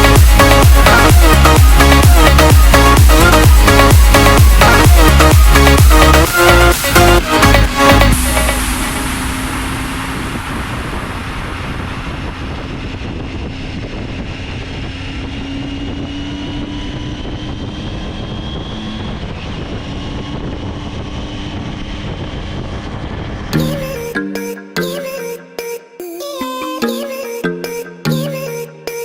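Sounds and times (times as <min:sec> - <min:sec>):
motorcycle engine running: 0:00.0 - 0:06.2, 0:06.8 - 0:22.8
wind noise on microphone: 0:00.0 - 0:23.9.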